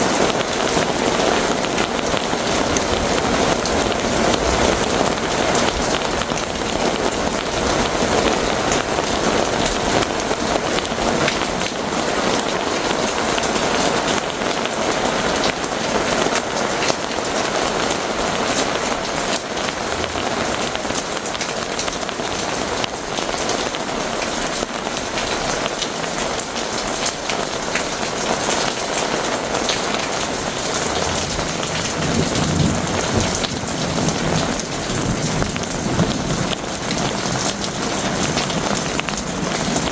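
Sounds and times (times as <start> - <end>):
heavy rain pouring: 0.0 - 39.9
raindrops ticking: 0.0 - 39.9
low thunder rumble: 30.8 - 39.9.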